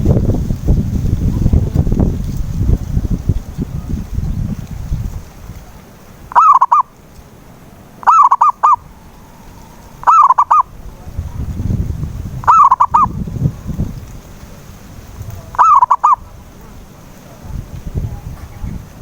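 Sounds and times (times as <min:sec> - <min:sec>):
wind rumble on microphone: 0:00.0 - 0:07.2, 0:07.8 - 0:19.0
dove cooing: 0:06.3 - 0:06.9, 0:08.0 - 0:11.6, 0:12.3 - 0:13.9, 0:15.2 - 0:18.9.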